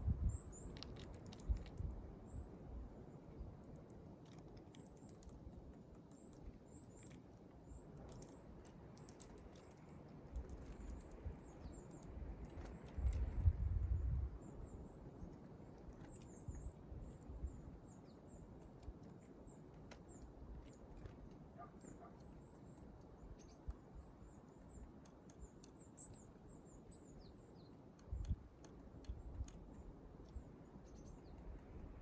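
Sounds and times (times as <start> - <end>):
high thin bird chirps: 25.4 - 27.2.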